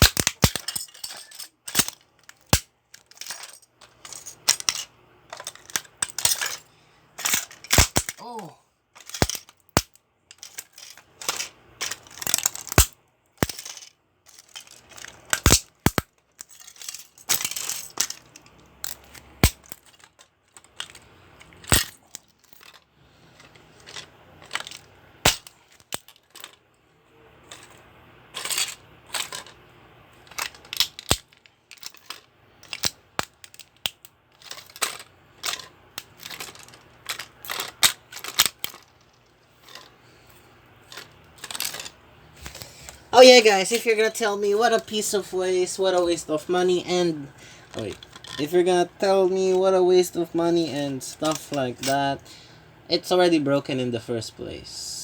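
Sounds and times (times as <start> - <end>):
hard plastic cracking and clattering: 0.0 - 6.6, 7.2 - 8.2, 9.0 - 22.8, 23.4 - 26.6, 30.2 - 39.9, 40.9 - 45.1, 47.7 - 49.7
plastic crunching: 30.2 - 39.0, 40.8 - 52.1.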